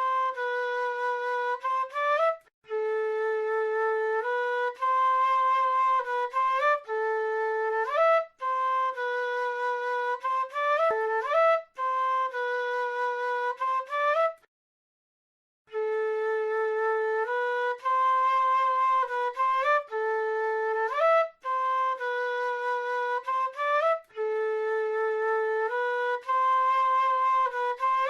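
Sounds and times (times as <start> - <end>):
flute solo melody: 0.0 - 14.5, 15.7 - 28.0.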